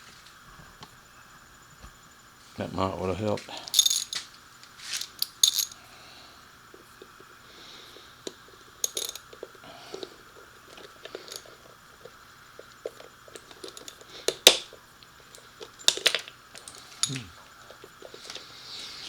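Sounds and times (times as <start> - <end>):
metal tools clinking: 3.6 - 5.8, 8.8 - 9.4, 15.6 - 17.4.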